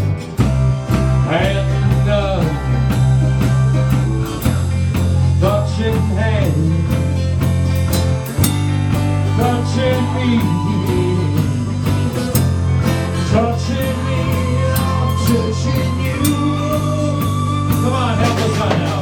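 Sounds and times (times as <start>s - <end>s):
live rock band playing: 0.0s - 19.0s
person singing: 1.2s - 4.2s, 9.2s - 19.0s.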